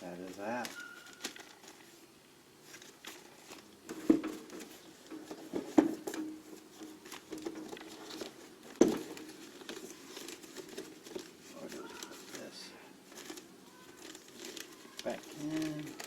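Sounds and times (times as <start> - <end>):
light rustling and tapping: 2.7 - 12.5.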